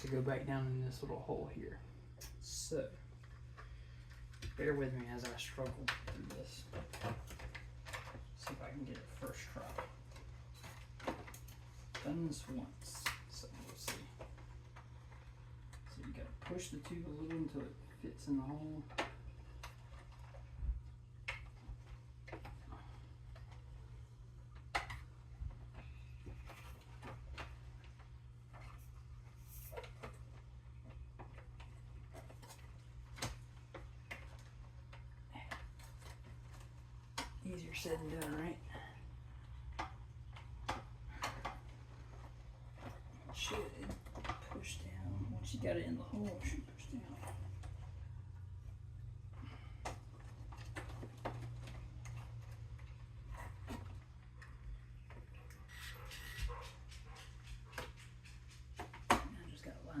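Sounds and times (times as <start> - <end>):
steady low hum: 0.0 - 60.0
plastic parts clicking and tapping: 24.4 - 38.5.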